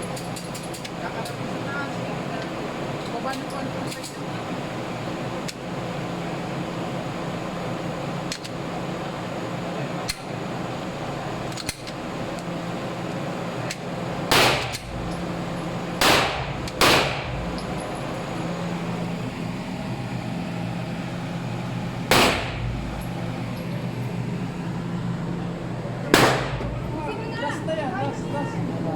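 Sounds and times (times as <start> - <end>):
steady background hum: 0.0 - 28.9
pistol shots: 14.3 - 15.0, 16.0 - 17.4, 22.1 - 22.8, 26.1 - 26.7.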